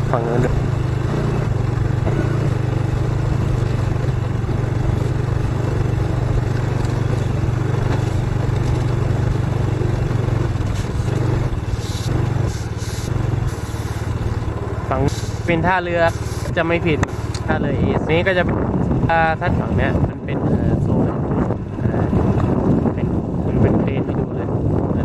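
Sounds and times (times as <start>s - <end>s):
motorcycle engine running: 0.0s - 25.0s
bursts of hiss: 10.7s - 14.4s, 15.0s - 17.4s.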